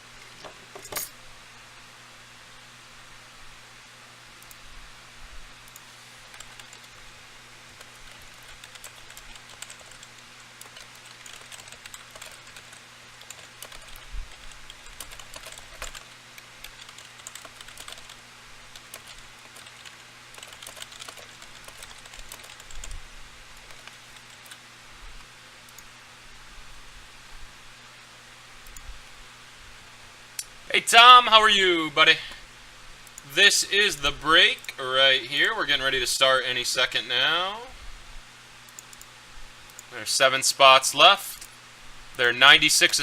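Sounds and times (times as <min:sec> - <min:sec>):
faint electrical hum: 0:00.0 - 0:43.0
keyboard typing: 0:05.7 - 0:07.0, 0:07.8 - 0:23.0, 0:23.6 - 0:24.6.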